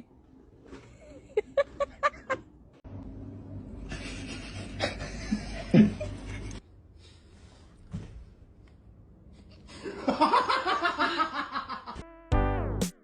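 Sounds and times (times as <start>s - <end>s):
person laughing: 3.9s - 6.6s.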